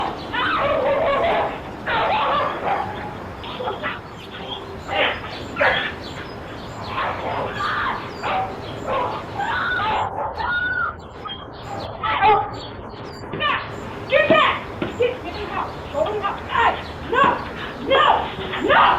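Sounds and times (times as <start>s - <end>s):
dog barking: 0.4s - 6.0s, 6.9s - 10.6s, 11.7s - 12.6s.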